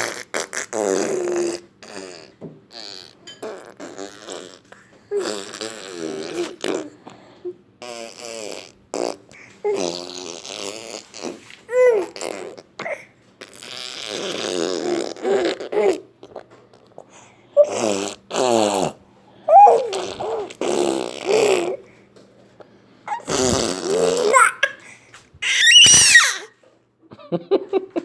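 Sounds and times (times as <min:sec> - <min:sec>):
child babbling and squealing: 0:19.5 - 0:20.5, 0:24.2 - 0:24.8, 0:25.4 - 0:26.5.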